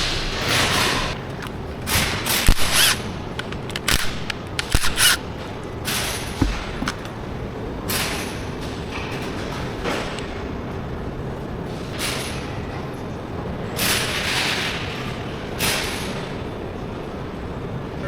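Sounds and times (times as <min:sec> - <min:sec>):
air tool bursts: 0:02.4 - 0:05.2
sharp metal clanks: 0:02.4 - 0:05.2.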